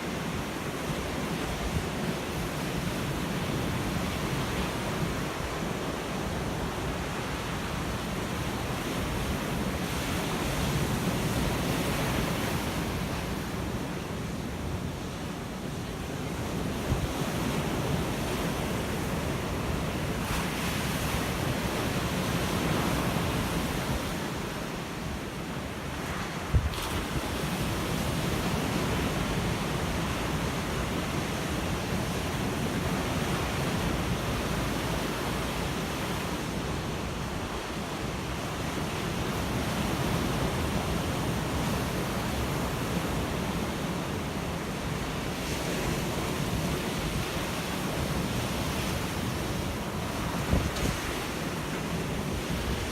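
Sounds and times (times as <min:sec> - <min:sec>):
ocean waves breaking: 0:00.0 - 0:52.9.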